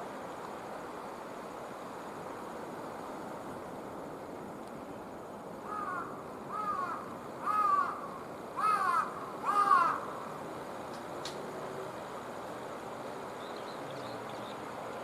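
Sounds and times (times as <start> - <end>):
steady background noise: 0.0 - 15.0
crow cawing: 5.6 - 10.3.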